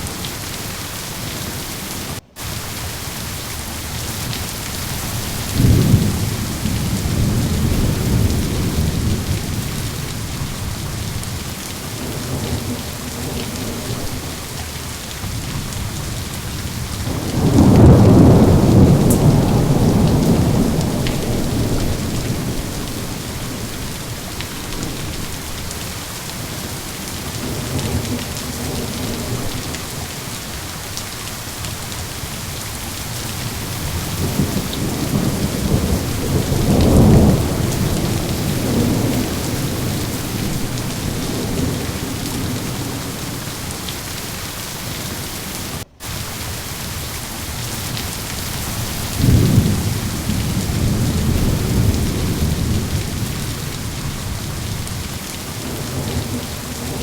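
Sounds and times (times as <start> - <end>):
heavy rain: 0.0 - 57.0
rolling thunder: 3.8 - 25.9, 33.4 - 43.8, 48.6 - 57.0.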